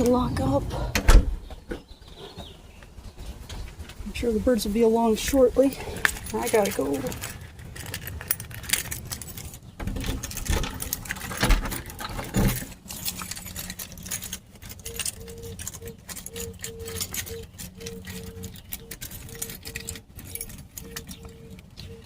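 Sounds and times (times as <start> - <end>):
keys jangling: 5.6 - 22.0.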